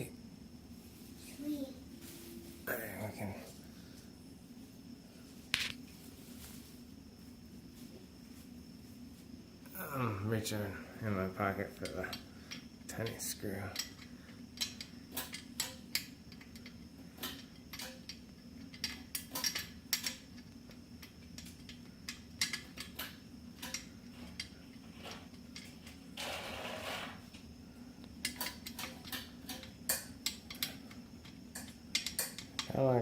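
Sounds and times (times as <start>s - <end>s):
low steady hum: 0.0s - 26.3s
metallic clicks of screws: 11.8s - 24.5s, 28.2s - 32.8s.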